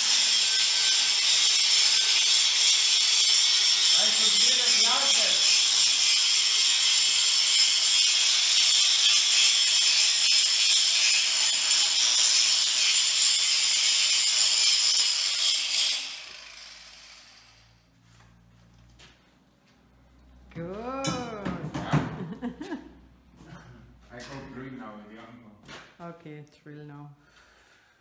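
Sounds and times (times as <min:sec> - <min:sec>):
power grinder on steel: 0:00.0 - 0:17.8.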